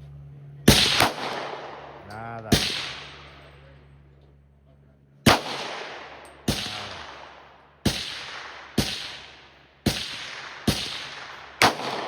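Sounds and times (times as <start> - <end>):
pistol shots with reverberation: 0.7 - 3.5, 5.3 - 12.0.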